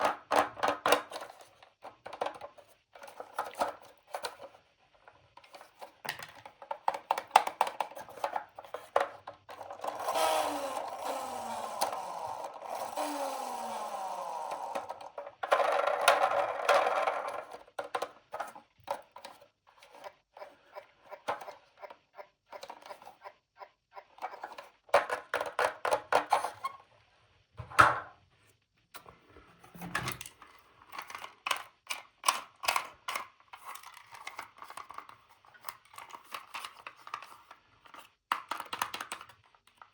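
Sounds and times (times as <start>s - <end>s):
plastic toys clicking and tapping: 0.0s - 4.5s, 5.4s - 20.1s, 24.2s - 26.4s, 30.2s - 39.9s.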